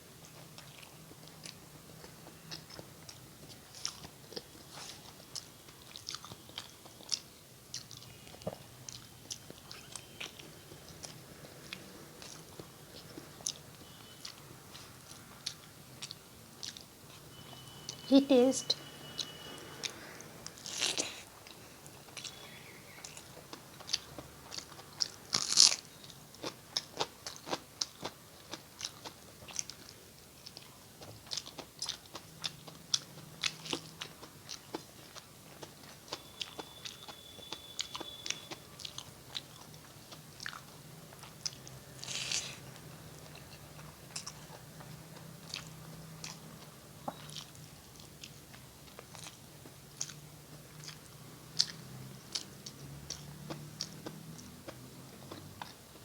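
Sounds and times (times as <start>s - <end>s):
person chewing with wet clicks: 0.1s - 18.1s, 18.8s - 56.0s
crunchy bites: 25.0s - 28.1s, 41.5s - 42.7s.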